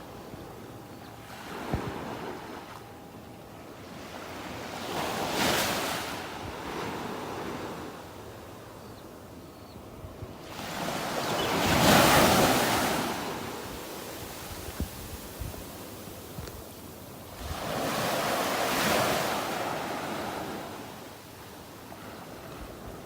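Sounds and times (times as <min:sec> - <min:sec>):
ocean waves breaking: 0:01.2 - 0:02.9, 0:03.9 - 0:08.1, 0:10.4 - 0:14.8, 0:17.4 - 0:21.1.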